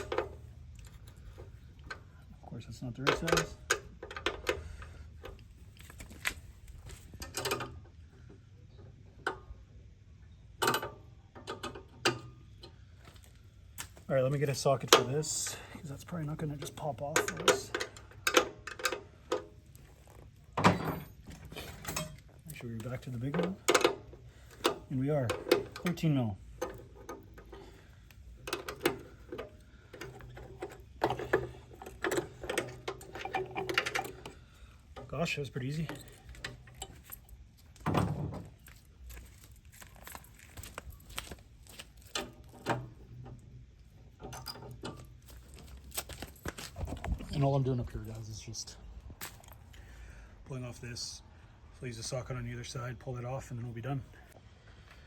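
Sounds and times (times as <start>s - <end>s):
metal hand tools clanking: 14.8s - 19.4s, 20.6s - 37.2s.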